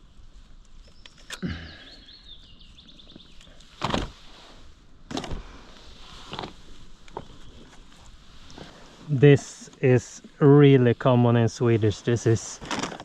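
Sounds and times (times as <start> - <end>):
outdoor ambience hiss: 0.0 - 13.0
small bird chirping: 0.7 - 3.8.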